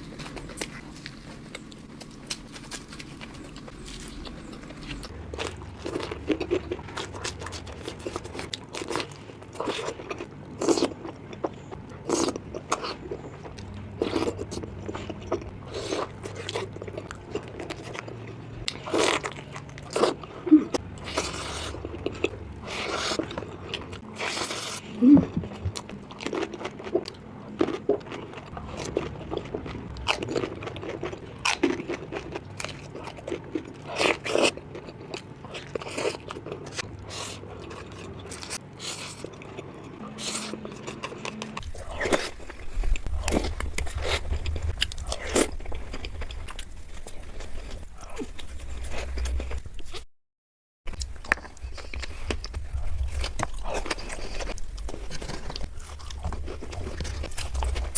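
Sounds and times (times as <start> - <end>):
crisp snack crunches: 0.0 - 10.9
chewing: 0.0 - 50.0, 50.9 - 57.9.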